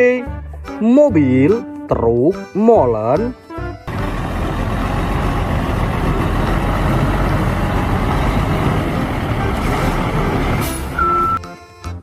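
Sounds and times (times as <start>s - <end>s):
heavy truck engine running: 3.9s - 11.4s.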